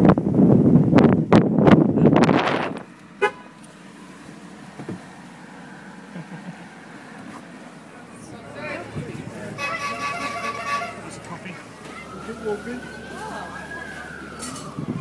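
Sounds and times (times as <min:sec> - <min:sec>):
car pulling away: 0:01.6 - 0:15.0
car horn toot: 0:03.2 - 0:03.5, 0:09.5 - 0:11.2.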